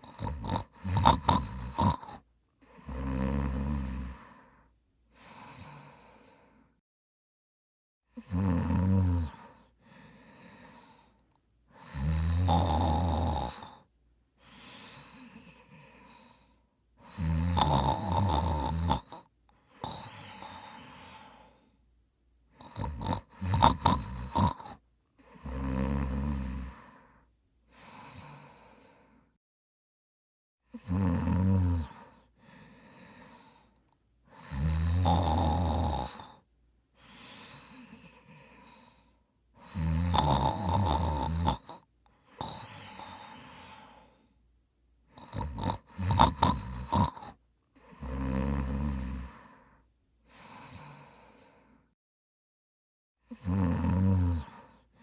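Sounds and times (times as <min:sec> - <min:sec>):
person snoring loudly: 0:00.0 - 0:04.5, 0:08.1 - 0:11.0, 0:11.7 - 0:16.4, 0:17.0 - 0:21.6, 0:22.6 - 0:27.1, 0:30.7 - 0:36.4, 0:39.6 - 0:44.2, 0:45.1 - 0:49.7, 0:53.2 - 0:55.0
soft breath: 0:04.1 - 0:06.8, 0:09.4 - 0:11.9, 0:13.7 - 0:17.1, 0:19.5 - 0:21.9, 0:26.6 - 0:29.4, 0:31.9 - 0:34.5, 0:36.2 - 0:39.7, 0:42.1 - 0:44.4, 0:49.2 - 0:52.0.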